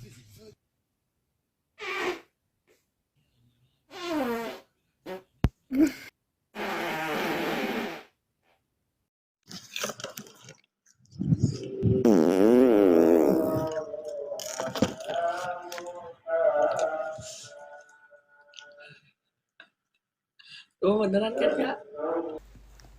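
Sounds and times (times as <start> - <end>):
person farting: 1.8 - 2.3, 3.9 - 5.3, 6.6 - 8.2, 11.9 - 13.8.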